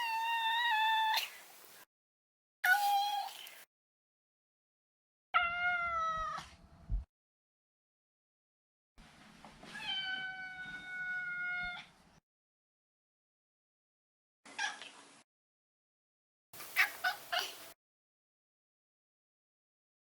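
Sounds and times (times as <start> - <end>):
cat meowing: 9.7 - 11.9.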